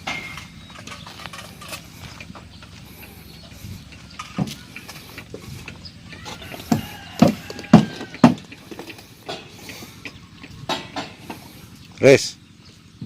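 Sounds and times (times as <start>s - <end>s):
sharp knocks: 6.7s - 9.5s.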